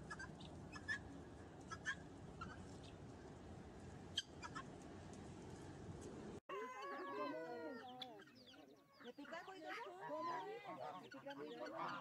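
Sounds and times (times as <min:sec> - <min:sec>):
young birds peeping: 0:00.0 - 0:03.4, 0:04.1 - 0:04.8, 0:06.7 - 0:12.0.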